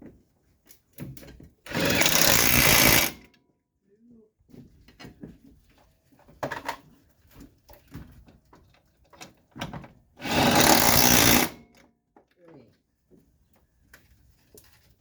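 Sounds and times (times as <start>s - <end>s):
power wrench bursts: 1.7s - 3.2s, 10.2s - 11.6s.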